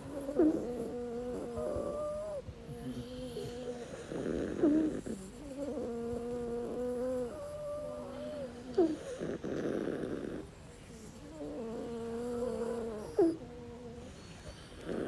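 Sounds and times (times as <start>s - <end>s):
whistling snoring: 12.3s - 13.4s, 14.0s - 15.0s.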